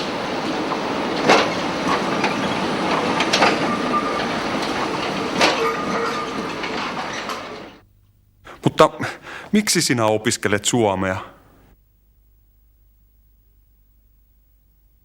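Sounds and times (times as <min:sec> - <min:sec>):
rail joint clack: 0:00.0 - 0:07.8
tram rumbling on rails: 0:00.0 - 0:07.8
wheel squeal: 0:00.0 - 0:07.8.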